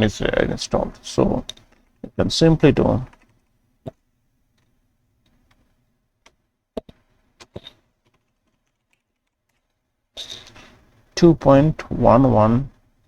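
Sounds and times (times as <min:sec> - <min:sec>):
computer keyboard keystrokes: 0:07.4 - 0:09.7.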